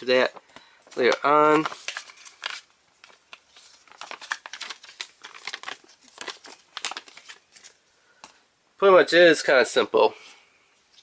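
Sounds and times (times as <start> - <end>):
packaging crinkling: 0.2 - 7.8.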